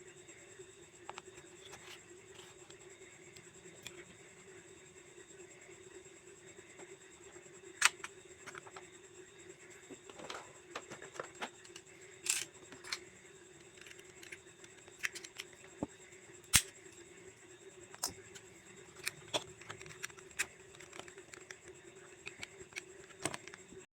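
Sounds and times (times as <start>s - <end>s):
faint steady hum: 0.0s - 23.9s
small plastic parts clicking: 7.8s - 8.8s, 10.1s - 13.0s, 13.6s - 15.8s, 17.9s - 23.8s.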